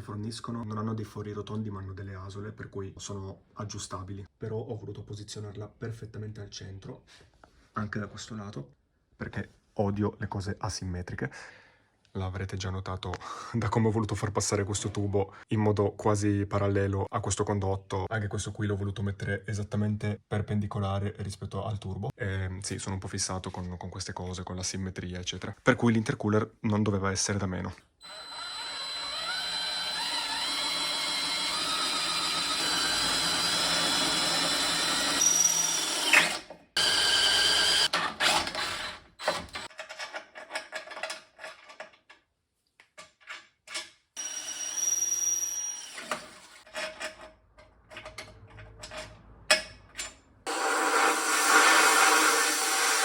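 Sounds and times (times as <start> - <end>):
power drill running under load: 28.0 - 39.7, 44.2 - 46.6, 50.5 - 53.0.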